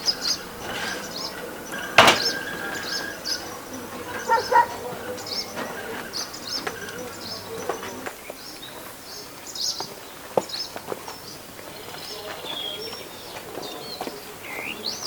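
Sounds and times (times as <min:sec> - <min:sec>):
small birds chirping: 0:00.0 - 0:15.0
sharp clicks and knocks: 0:00.6 - 0:02.6.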